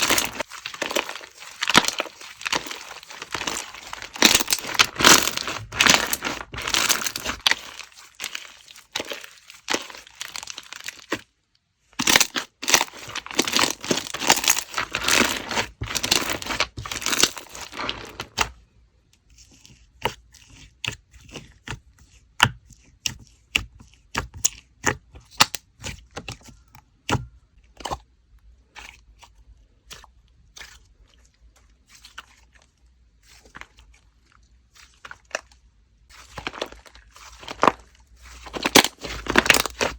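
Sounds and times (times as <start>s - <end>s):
slime crackling and popping: 0.0s - 11.2s, 12.0s - 18.5s, 36.2s - 39.9s.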